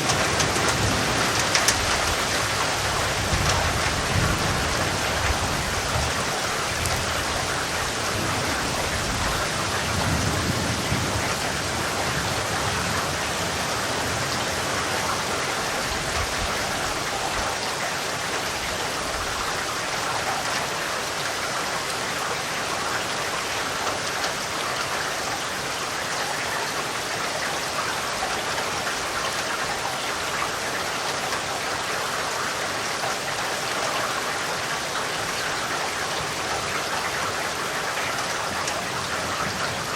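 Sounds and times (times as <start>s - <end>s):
distant thunder rumble: 0.0s - 17.4s
heavy rain falling: 0.0s - 39.9s.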